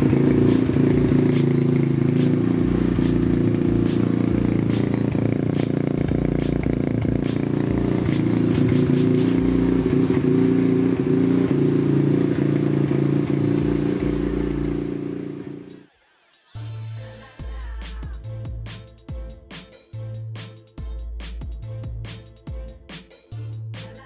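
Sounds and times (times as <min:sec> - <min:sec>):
motorcycle engine running: 0:00.0 - 0:15.8.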